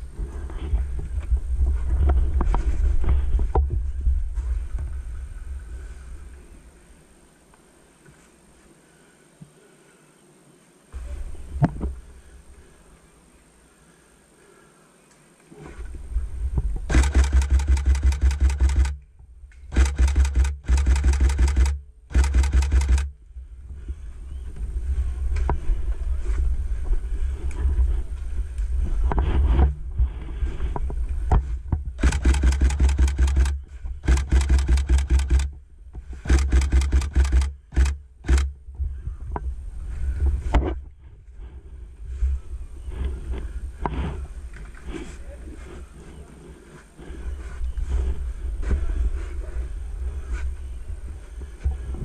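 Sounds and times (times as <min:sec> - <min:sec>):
airsoft gun full-auto bursts: 0:16.9 - 0:19.0, 0:19.7 - 0:23.1, 0:32.0 - 0:35.5, 0:36.2 - 0:38.5.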